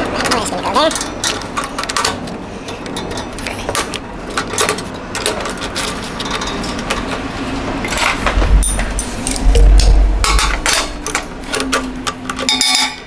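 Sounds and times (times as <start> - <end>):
hand tools clicking and knocking: 0.0 - 13.0.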